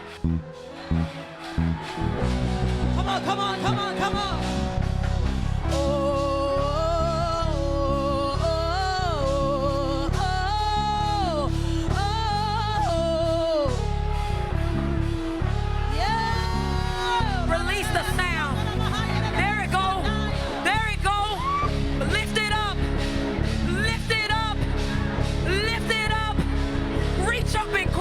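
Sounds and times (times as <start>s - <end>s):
person singing with vibrato: 3.0s - 4.7s, 5.6s - 28.0s.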